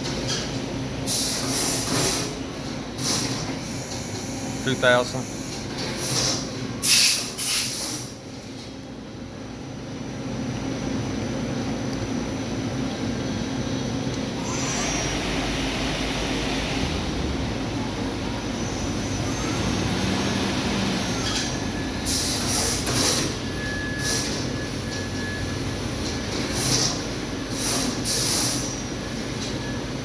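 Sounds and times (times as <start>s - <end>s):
lathe machine hum: 14.2s - 23.6s.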